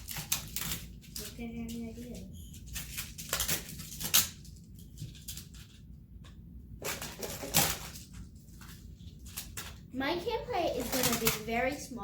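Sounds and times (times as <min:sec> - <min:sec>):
plastic tiles clattering together: 0:06.8 - 0:08.1.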